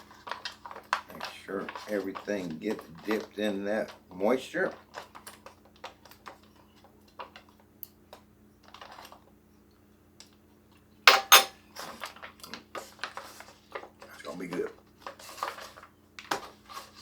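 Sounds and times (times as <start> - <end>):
sharp knocks: 11.1 - 11.5.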